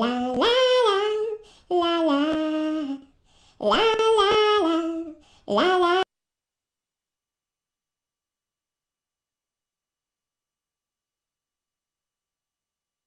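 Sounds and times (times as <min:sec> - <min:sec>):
woman singing wordless tune: 0:00.0 - 0:06.1.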